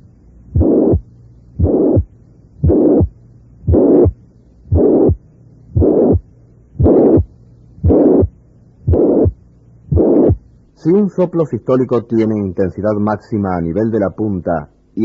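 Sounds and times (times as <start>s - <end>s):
heartbeat with harsh murmur: 0.0s - 10.6s.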